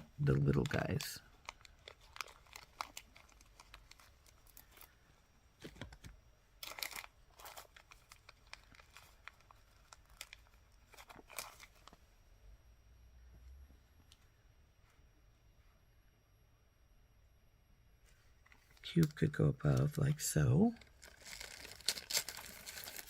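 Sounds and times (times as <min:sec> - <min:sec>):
plastic bags crinkling: 0:00.2 - 0:05.0, 0:06.6 - 0:12.0, 0:20.7 - 0:23.0.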